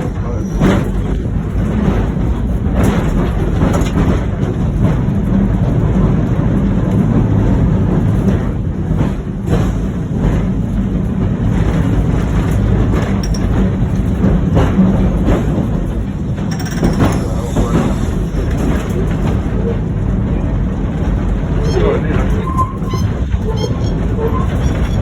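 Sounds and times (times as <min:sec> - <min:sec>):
tram clunks and rattles: 0:00.0 - 0:25.0
tram wheels rumbling on track: 0:00.0 - 0:25.0.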